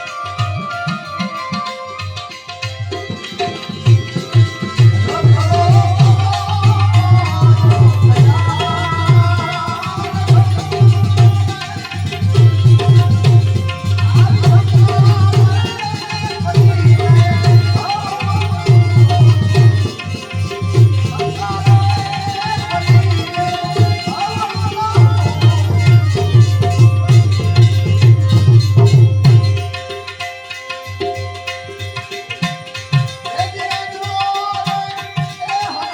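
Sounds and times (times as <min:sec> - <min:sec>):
wavering melody: 0:00.0 - 0:33.4
hand drums beat: 0:02.9 - 0:30.2.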